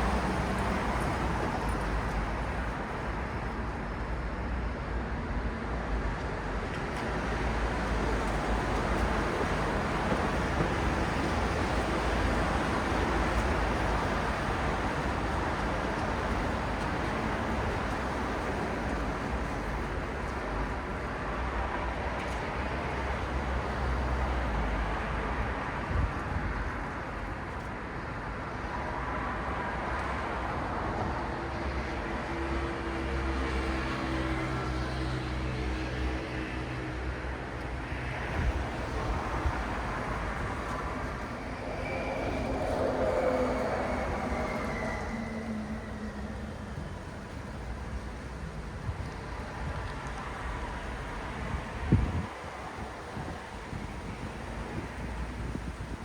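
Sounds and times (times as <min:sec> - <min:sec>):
city road traffic: 0:00.0 - 0:56.0.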